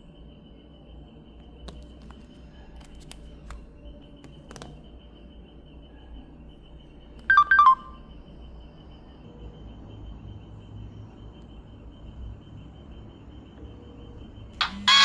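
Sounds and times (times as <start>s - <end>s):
phone electronic beeps: 7.3s - 8.0s, 14.6s - 15.0s.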